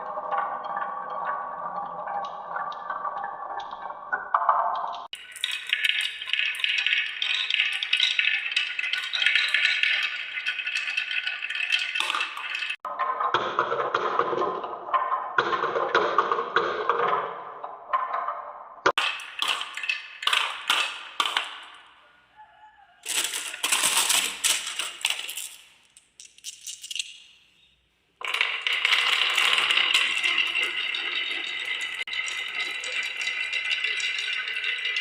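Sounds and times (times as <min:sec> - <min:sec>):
marbles clicking on track: 0:00.0 - 0:12.9, 0:18.9 - 0:21.9, 0:23.0 - 0:27.2, 0:28.2 - 0:35.0
marbles rolling on wooden track: 0:05.0 - 0:12.8, 0:19.0 - 0:21.8, 0:23.0 - 0:27.1, 0:28.2 - 0:35.0.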